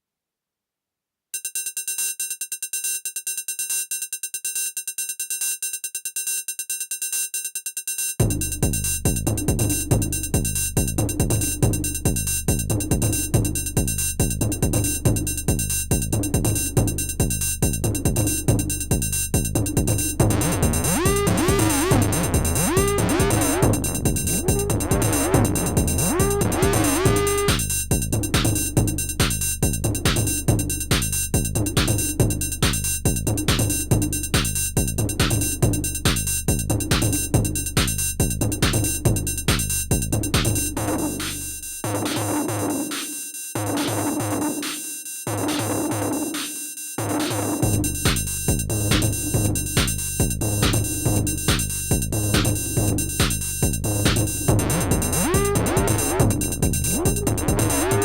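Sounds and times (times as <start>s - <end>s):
heavy kick drum and bass: 8.2s - 42.4s, 47.0s - 58.0s
fast high ticking: 20.2s - 27.6s
chirping synth sweeps: 20.3s - 27.6s.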